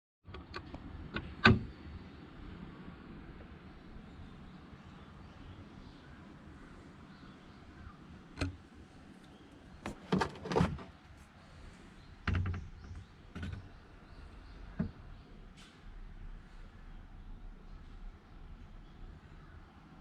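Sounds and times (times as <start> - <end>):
knocks and thumps: 9.9 - 10.9.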